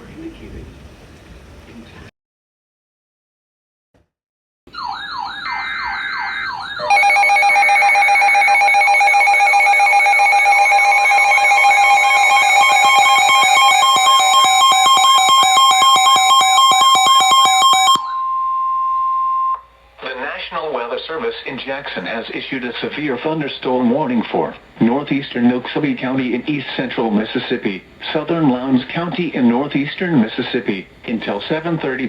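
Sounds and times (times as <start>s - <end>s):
electronic siren sweeps: 4.7s - 19.6s
steady warning tone: 4.7s - 19.8s
two-tone attention signal: 4.8s - 19.7s.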